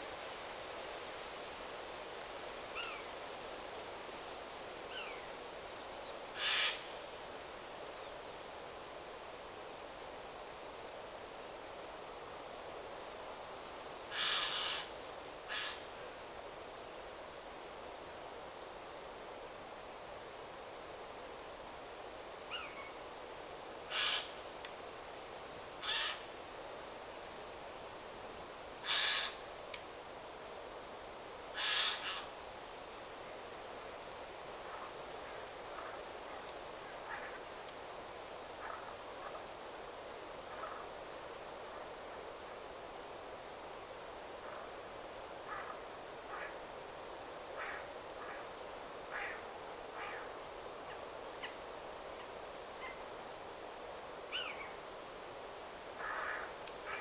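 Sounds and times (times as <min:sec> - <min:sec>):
wind rustling through trees: 0:00.0 - 0:57.0
bird harsh call: 0:06.4 - 0:06.8, 0:25.8 - 0:26.2, 0:28.8 - 0:29.4, 0:31.6 - 0:32.3.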